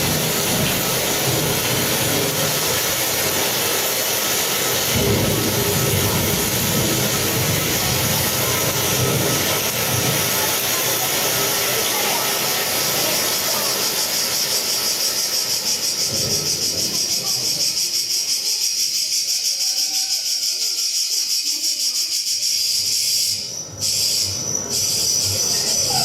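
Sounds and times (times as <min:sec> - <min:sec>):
broad hiss: 0:00.0 - 0:26.0.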